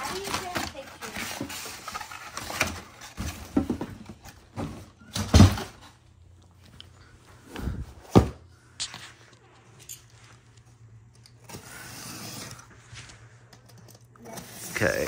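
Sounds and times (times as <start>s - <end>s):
cardboard rustling and scraping: 0.0s - 6.0s, 10.1s - 15.0s.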